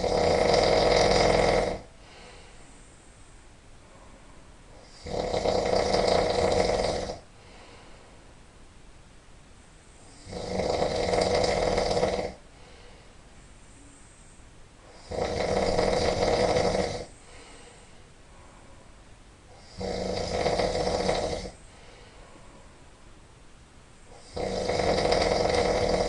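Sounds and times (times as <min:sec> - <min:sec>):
person snoring loudly: 0:00.0 - 0:01.9, 0:04.8 - 0:07.3, 0:10.1 - 0:12.4, 0:14.9 - 0:17.1, 0:19.5 - 0:21.6, 0:24.1 - 0:26.0.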